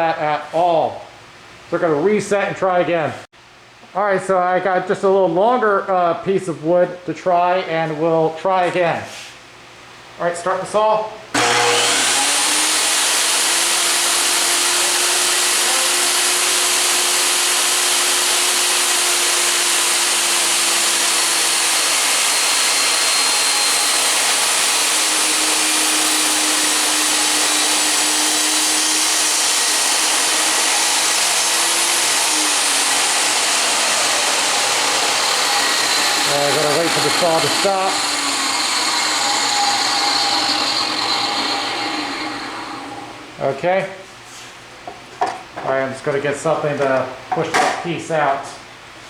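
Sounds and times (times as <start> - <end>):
table saw whirring: 11.4 - 43.4.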